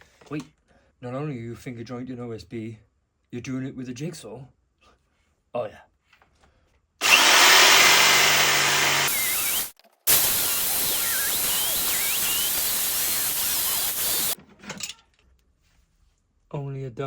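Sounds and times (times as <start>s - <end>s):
jigsaw cutting board: 7.0s - 14.4s.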